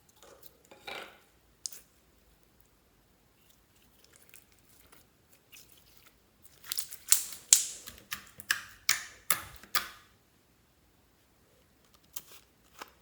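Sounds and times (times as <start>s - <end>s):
slime crackling and squishing: 3.6s - 9.8s.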